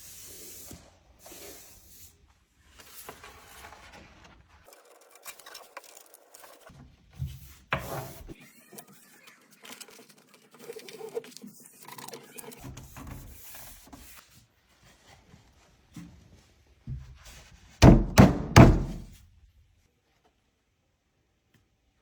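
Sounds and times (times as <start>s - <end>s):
heavy thuds: 17.8s - 19.2s.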